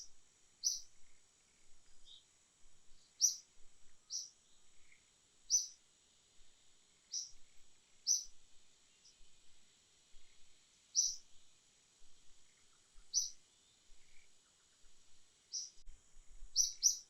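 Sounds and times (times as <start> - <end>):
short high bird chirps: 11.0 - 11.2, 16.6 - 17.0.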